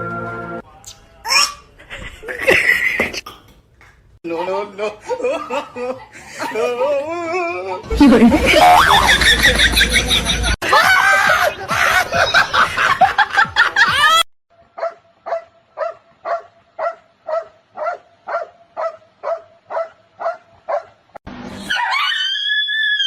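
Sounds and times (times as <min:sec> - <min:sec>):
dog barking: 0:14.8 - 0:21.0.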